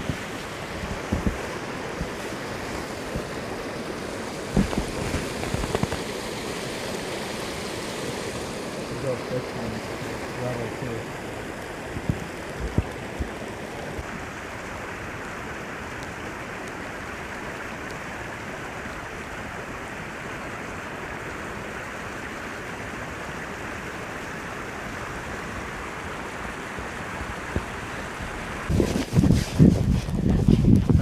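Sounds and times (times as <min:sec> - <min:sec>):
creek water rushing: 0:00.0 - 0:31.0
soft thumps: 0:04.5 - 0:06.0.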